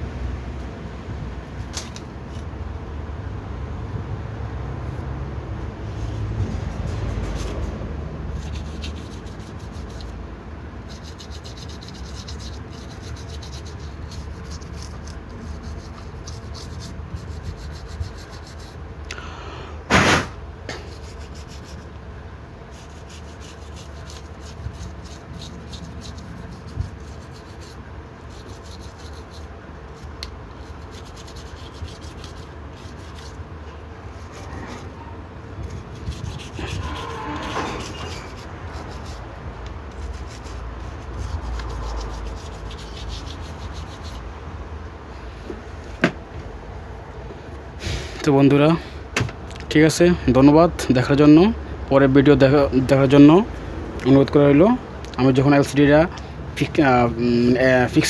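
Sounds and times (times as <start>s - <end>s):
scratchy rubbing and scrubbing: 5.9s - 10.2s, 10.8s - 18.8s, 20.8s - 22.0s, 22.7s - 33.4s, 34.1s - 44.3s
short loud noise burst: 19.9s - 20.4s.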